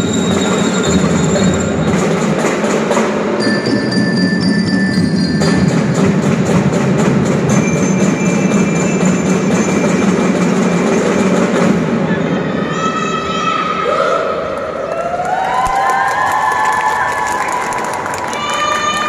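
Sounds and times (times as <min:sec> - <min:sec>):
bell-like mallet notes: 0:00.0 - 0:02.0, 0:03.4 - 0:06.2
marching band drums beating: 0:00.0 - 0:12.1.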